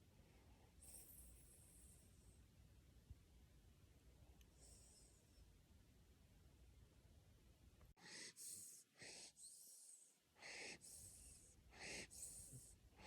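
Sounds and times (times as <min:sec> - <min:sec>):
puppy snoring: 0:08.0 - 0:12.8.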